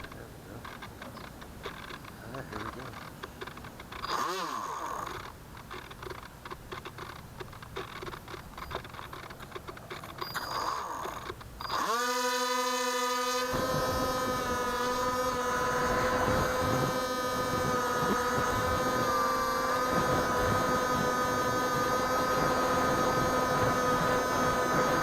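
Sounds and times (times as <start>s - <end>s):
electric motor and propeller whine: 0.0s - 25.0s.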